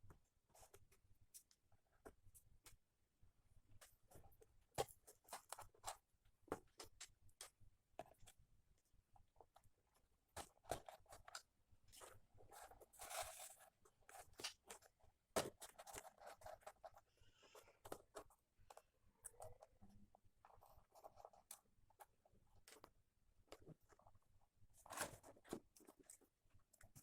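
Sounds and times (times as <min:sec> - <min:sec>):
objects being handled: 0:10.3 - 0:27.0.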